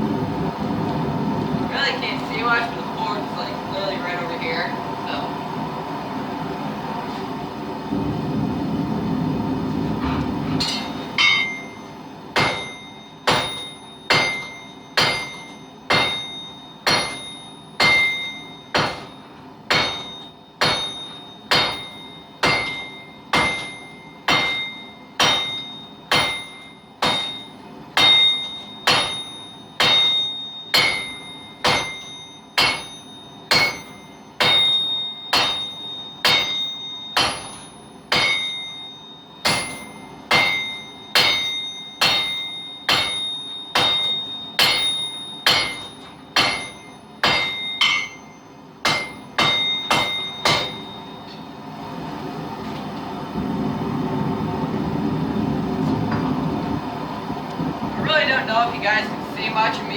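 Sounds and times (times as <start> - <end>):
steady rushing noise: 4.7 - 10.7, 53.1 - 59.2
hammer ringing on anvil: 10.6 - 51.6.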